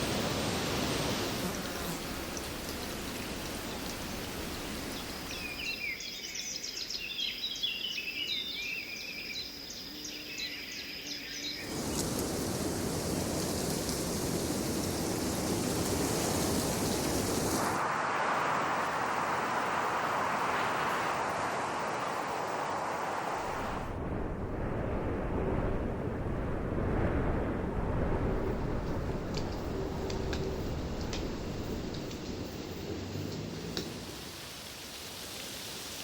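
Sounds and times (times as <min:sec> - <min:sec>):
wind in foliage: 0:00.0 - 0:36.0
birds chirping: 0:01.6 - 0:17.7.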